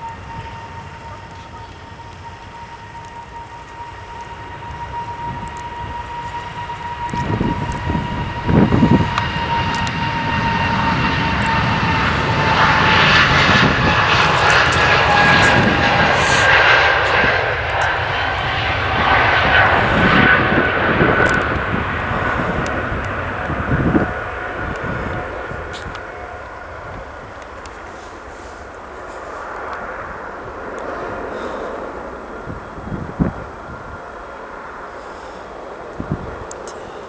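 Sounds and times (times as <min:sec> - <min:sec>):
whining engine tones: 0:00.0 - 0:27.6
jet engine roar: 0:00.0 - 0:37.0.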